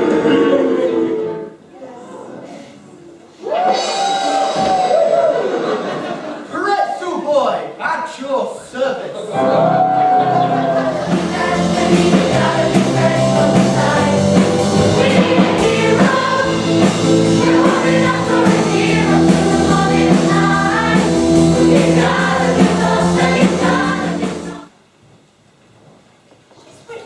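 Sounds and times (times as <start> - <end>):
group of voices singing: 9.4 - 24.7
instrumental accompaniment: 9.4 - 24.7.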